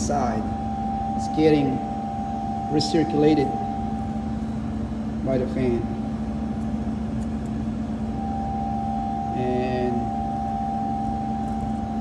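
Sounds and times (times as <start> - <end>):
high steady tone: 0.0 - 12.0
refrigerator fan hum: 0.0 - 12.0.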